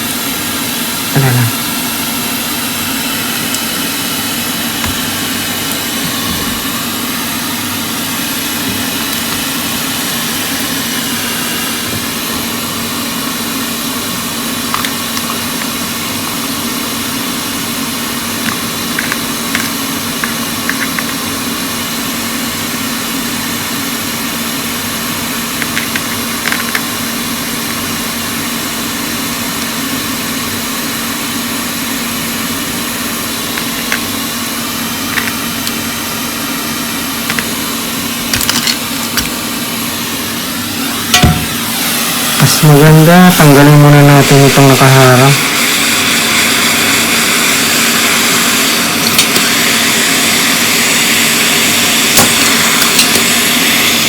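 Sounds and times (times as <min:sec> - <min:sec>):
hot air station hissing: 0:00.0 - 0:54.0
small tools clicking on board: 0:18.4 - 0:21.2, 0:25.6 - 0:26.9, 0:35.1 - 0:35.8.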